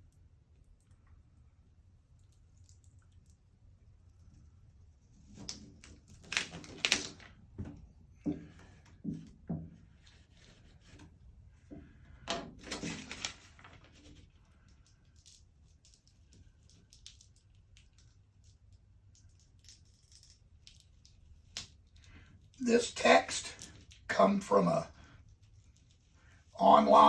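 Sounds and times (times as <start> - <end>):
squeegee rubbing on vinyl: 10.0 - 11.1.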